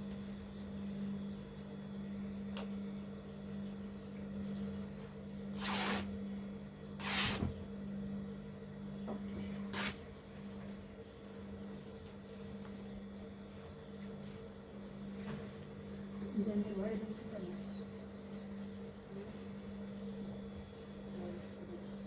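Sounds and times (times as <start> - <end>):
scissors cutting fabric: 5.6 - 6.1, 7.0 - 7.5, 9.7 - 10.0.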